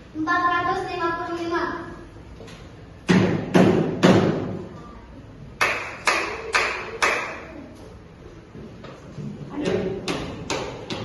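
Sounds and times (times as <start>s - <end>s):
hand claps: 5.6s - 7.4s.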